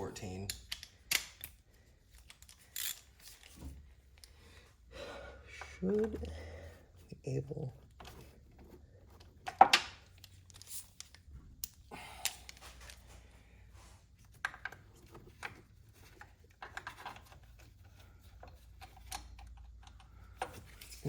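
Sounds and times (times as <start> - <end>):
metal socket clinking: 0.2 - 3.6.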